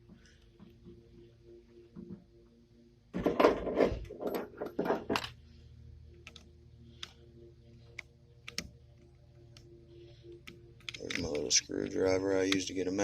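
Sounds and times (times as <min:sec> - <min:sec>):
small metal parts clinking: 0:03.3 - 0:05.4.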